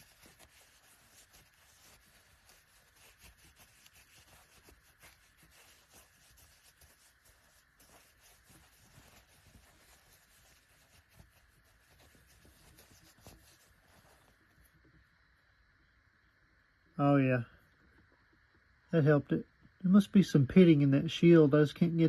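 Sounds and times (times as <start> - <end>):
sandpaper rubbing: 0.0 - 14.5.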